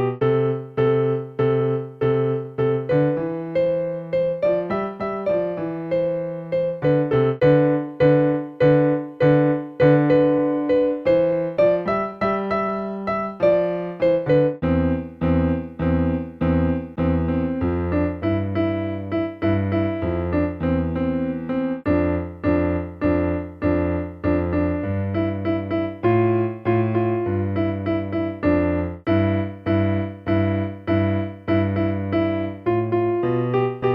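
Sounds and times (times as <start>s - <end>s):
electronic keyboard melody: 0.0s - 33.9s.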